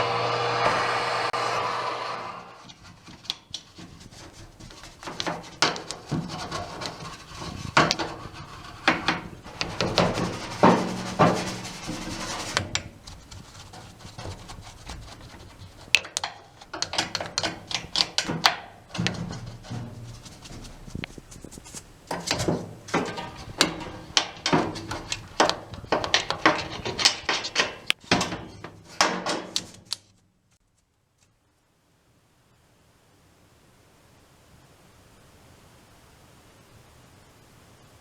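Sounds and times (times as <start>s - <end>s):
machine winding down: 0.0s - 2.6s
rubbing and scraping: 0.5s - 30.2s
knocks and clicks: 2.6s - 30.1s.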